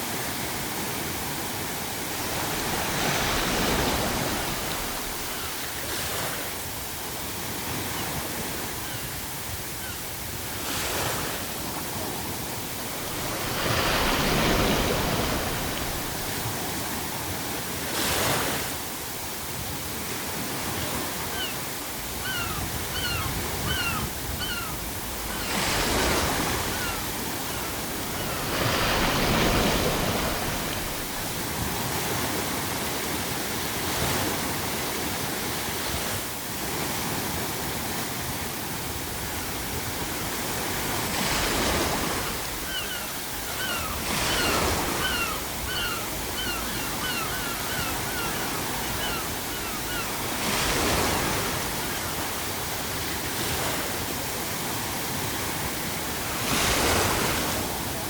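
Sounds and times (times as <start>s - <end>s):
ocean surf breaking: 0.0s - 58.0s
seagulls calling: 21.2s - 31.3s, 41.6s - 52.2s.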